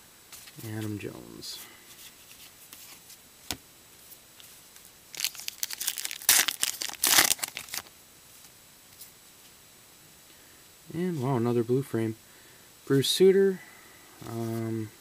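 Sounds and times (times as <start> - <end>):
wrapper tearing and crinkling: 5.1 - 7.9.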